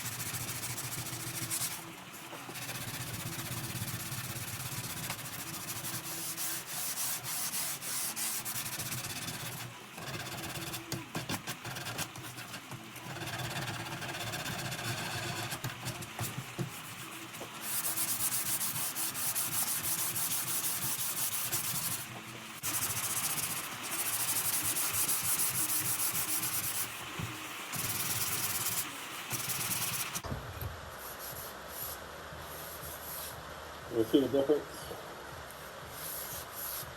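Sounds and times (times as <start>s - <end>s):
sandpaper rubbing on wood: 0.0s - 1.9s, 2.5s - 10.8s, 16.2s - 27.0s, 27.8s - 30.2s, 35.9s - 36.9s.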